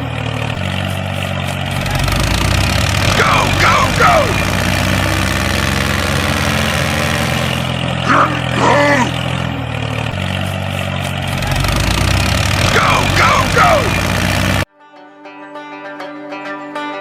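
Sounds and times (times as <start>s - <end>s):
motor humming: 0.0s - 14.7s.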